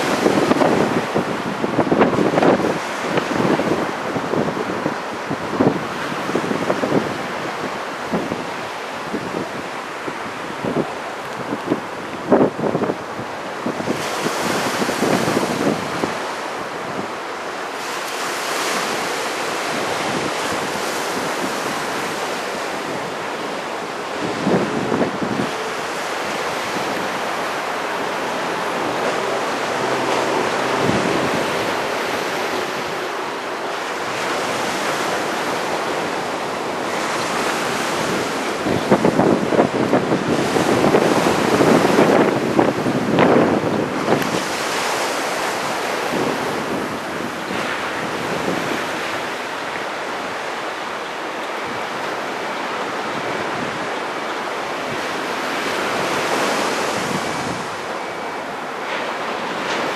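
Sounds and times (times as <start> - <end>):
heavy surf rushing: 0.0 - 59.9
wind buffeting microphone: 0.0 - 59.9.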